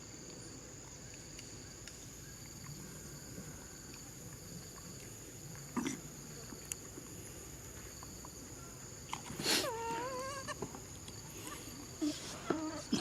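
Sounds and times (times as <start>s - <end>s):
high insect drone: 0.0s - 13.0s
young monkey calling: 9.6s - 10.6s.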